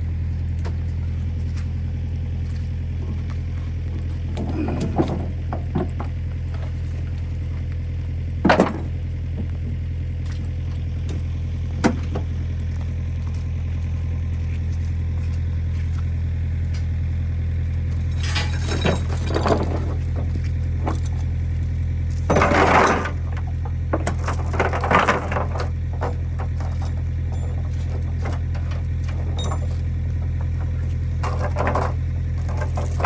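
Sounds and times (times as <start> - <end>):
excavator diesel engine droning: 0.0 - 6.7, 15.1 - 33.0
sharp metallic clanks: 17.7 - 23.3, 24.1 - 29.8, 30.6 - 33.0.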